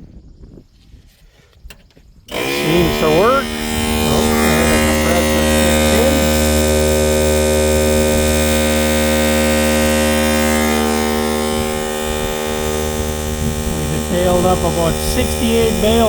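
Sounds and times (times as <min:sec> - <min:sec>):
air compressor humming: 0:02.3 - 0:16.0.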